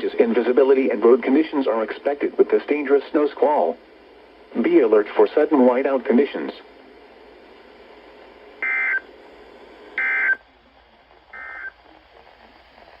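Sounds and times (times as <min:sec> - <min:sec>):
faint radio hiss: 0:00.0 - 0:13.0
digital data tone bursts: 0:08.6 - 0:09.0, 0:10.0 - 0:10.4, 0:11.3 - 0:11.8.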